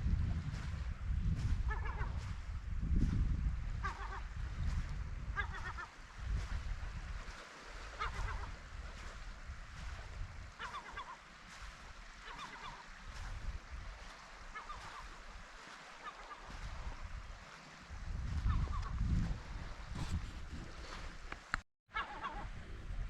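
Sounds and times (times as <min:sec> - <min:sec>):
wind rumble on microphone: 0:00.0 - 0:23.0
gull calling: 0:01.7 - 0:02.2, 0:03.8 - 0:04.3, 0:05.4 - 0:05.9, 0:08.0 - 0:08.6, 0:10.6 - 0:11.2, 0:12.2 - 0:12.9, 0:14.5 - 0:15.2, 0:16.0 - 0:16.5, 0:18.4 - 0:19.0, 0:21.9 - 0:22.5.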